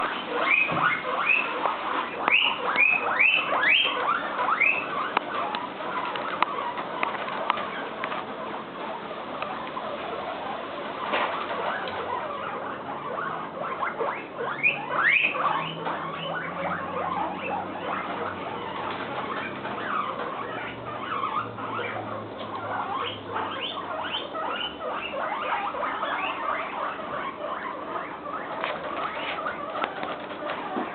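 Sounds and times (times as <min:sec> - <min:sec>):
guinea pig squealing: 0:00.0 - 0:30.9.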